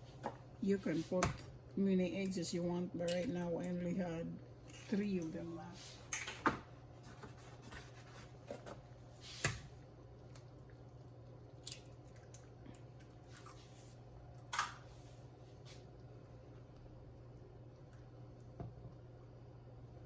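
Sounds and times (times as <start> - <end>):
eggs cracking against pot: 1.1 - 3.8, 9.4 - 13.6.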